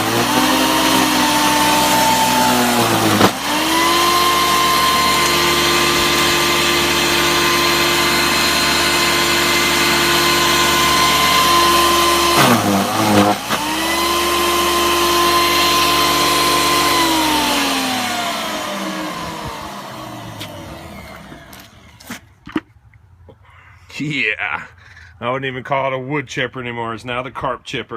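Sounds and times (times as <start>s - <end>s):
wood chipper motor whining: 0.0s - 22.1s
chipper grinding through fish: 0.0s - 22.2s.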